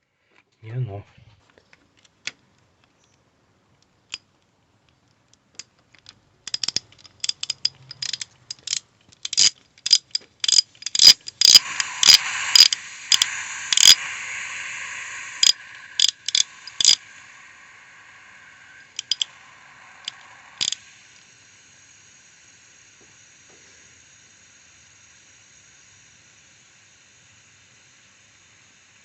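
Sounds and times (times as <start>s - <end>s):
sharp mechanical clicks: 5.6s - 20.9s
steady hiss: 10.5s - 29.0s.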